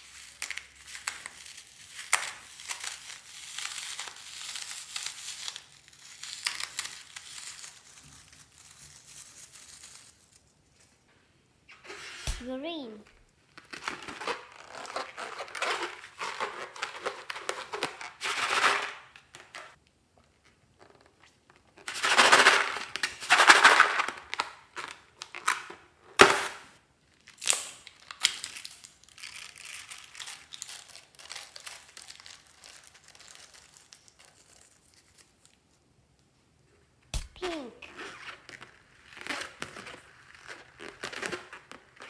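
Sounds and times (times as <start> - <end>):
crinkling and rustling: 0.0 - 42.0
sharp snap: 12.2 - 12.5, 37.1 - 37.5.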